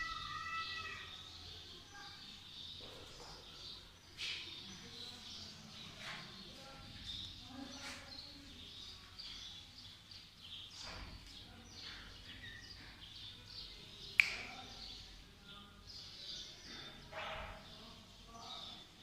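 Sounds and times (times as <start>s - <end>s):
sharp click: 14.2s - 14.5s.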